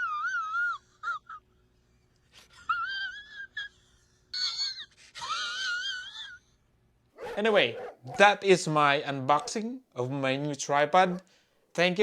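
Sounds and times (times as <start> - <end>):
dog whining: 7.2 - 8.3.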